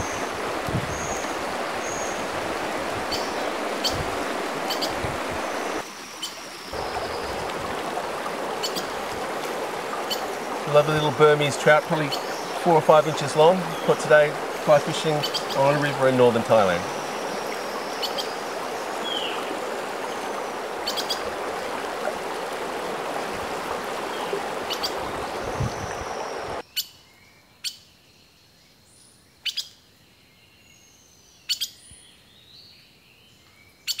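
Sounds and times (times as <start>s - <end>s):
creek running: 0.0s - 26.6s
birds chirping: 0.0s - 26.7s.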